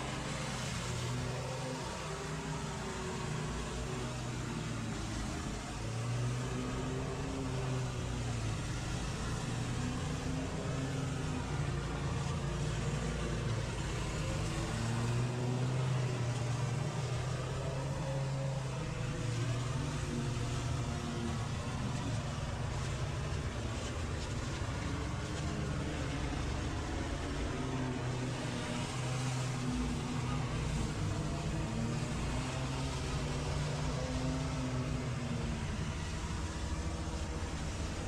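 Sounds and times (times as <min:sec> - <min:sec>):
engine running under load: 0:00.0 - 0:38.0.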